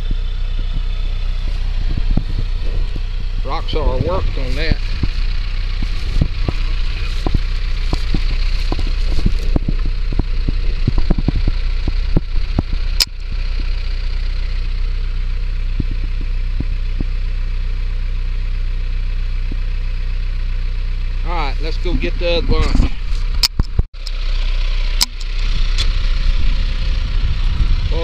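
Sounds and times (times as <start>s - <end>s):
diesel engine idling: 0.0s - 28.0s
knocks and rattles: 1.8s - 13.1s
sharp click: 22.6s - 24.2s.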